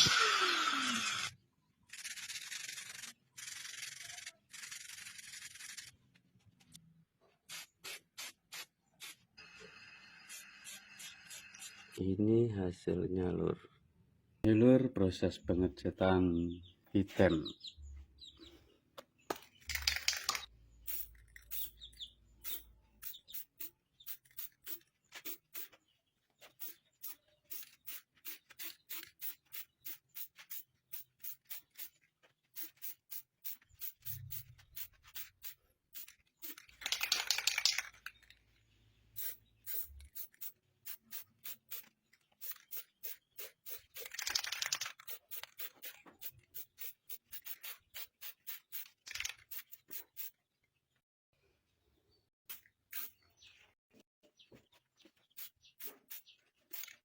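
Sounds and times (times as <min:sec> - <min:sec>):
spray can hissing: 0:07.5 - 0:09.2, 0:19.7 - 0:21.8, 0:22.4 - 0:25.7, 0:26.5 - 0:37.8, 0:39.2 - 0:50.4, 0:52.5 - 0:53.2, 0:55.3 - 0:57.0.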